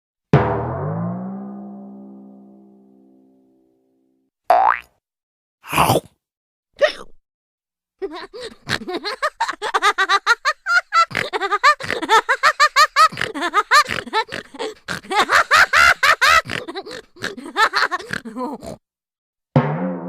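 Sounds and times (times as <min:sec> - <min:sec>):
high-pitched giggling laughter: 0:08.0 - 0:18.8.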